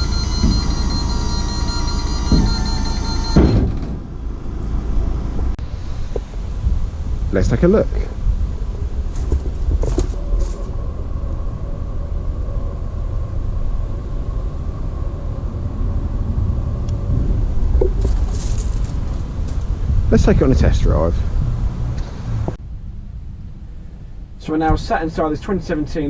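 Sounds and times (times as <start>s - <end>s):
hydraulic pump whining: 0.0s - 4.5s
low rumble: 0.0s - 25.8s.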